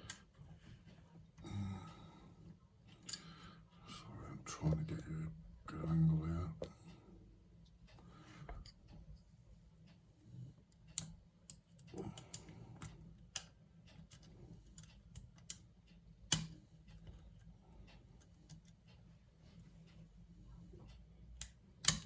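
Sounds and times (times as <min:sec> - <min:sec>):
lock pick clicking in lock: 0:21.4 - 0:22.0.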